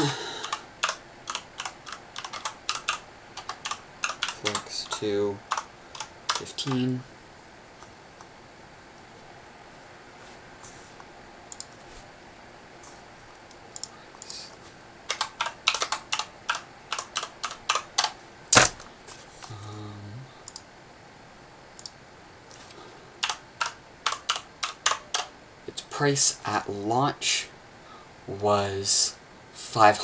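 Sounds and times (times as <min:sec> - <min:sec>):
typing on a computer keyboard: 0:00.4 - 0:06.9, 0:15.1 - 0:18.7, 0:23.2 - 0:25.3.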